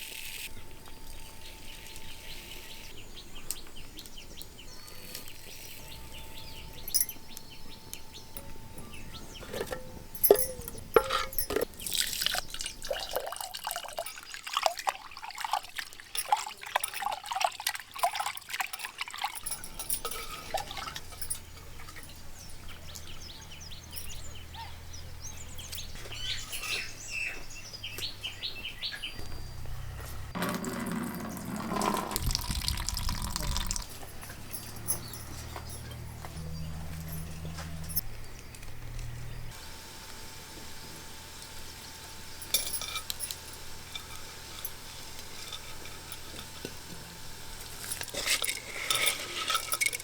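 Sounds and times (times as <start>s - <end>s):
clinks and knocks of vessels: 9.4s - 22.5s, 30.4s - 36.1s, 42.4s - 46.9s, 47.6s - 50.0s
water pouring and splashing: 11.8s - 19.6s, 30.4s - 34.0s.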